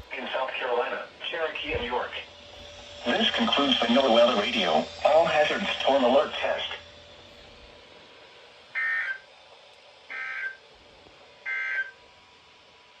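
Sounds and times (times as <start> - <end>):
digital data tone bursts: 8.8 - 9.2, 10.1 - 10.6, 11.5 - 12.0.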